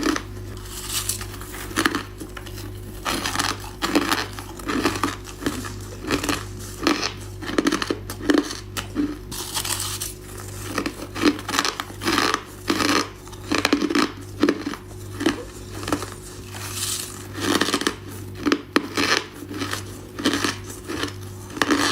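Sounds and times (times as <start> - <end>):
ice being chewed: 0.0 - 21.9
steady low hum: 0.0 - 21.9.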